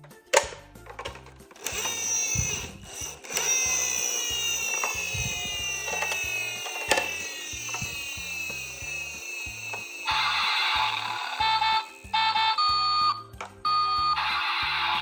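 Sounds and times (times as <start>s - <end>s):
background music: 0.0s - 15.0s
sharp clicks: 0.2s - 10.2s
toy electronic siren: 1.6s - 15.0s.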